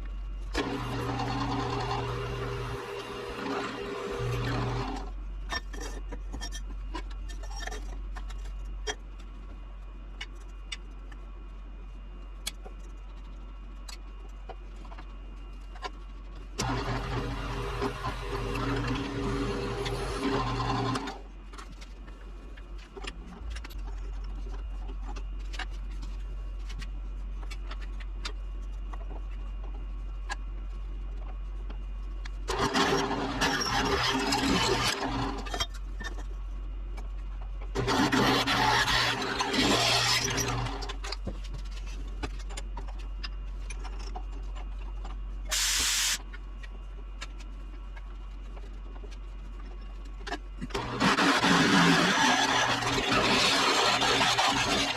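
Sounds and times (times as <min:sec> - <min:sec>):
low machine hum: 0:00.0 - 0:54.9
metal cutting or grinding: 0:32.5 - 0:35.6, 0:37.8 - 0:40.9, 0:50.8 - 0:54.9.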